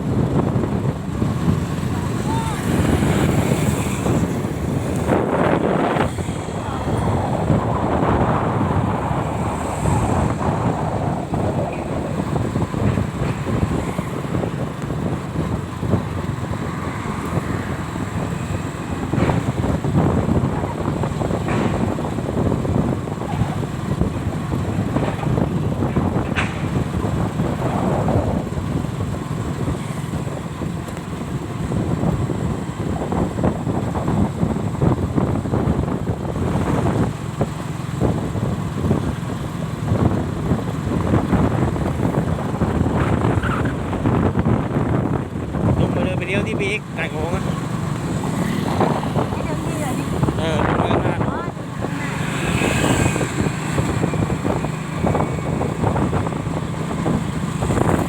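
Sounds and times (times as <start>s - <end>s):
wind buffeting microphone: 0.0s - 58.0s
vehicle engine running: 34.8s - 58.0s.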